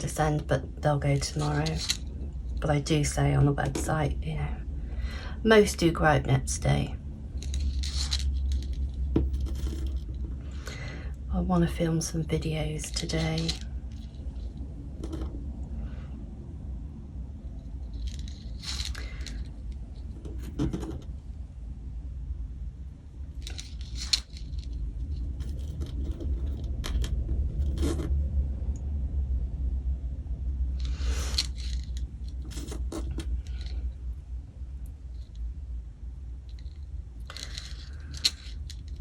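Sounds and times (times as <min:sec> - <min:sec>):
steady low hum: 0:00.0 - 0:39.0
plastic beads clicking and rattling: 0:01.2 - 0:02.7, 0:07.4 - 0:10.3, 0:12.8 - 0:15.3, 0:17.9 - 0:21.1, 0:23.3 - 0:28.1, 0:30.8 - 0:33.8, 0:36.5 - 0:39.0.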